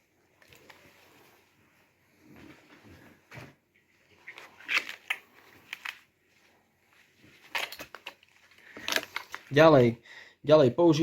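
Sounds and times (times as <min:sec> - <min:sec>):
plastic and fabric clicks and scrapes: 0:02.5 - 0:06.2, 0:07.2 - 0:09.6.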